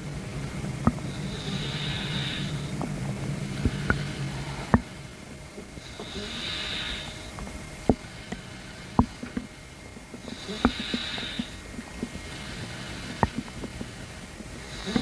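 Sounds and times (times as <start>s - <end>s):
long hissing breaths: 0.0s - 15.0s
stomach gurgling pops: 7.4s - 12.3s, 13.0s - 15.0s.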